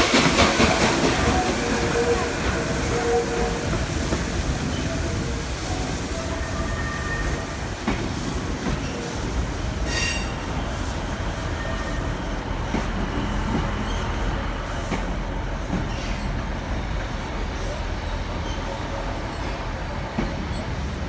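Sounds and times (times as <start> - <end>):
high wheel squeals: 0.0 - 7.8
train wheels rolling on rails: 0.0 - 21.0.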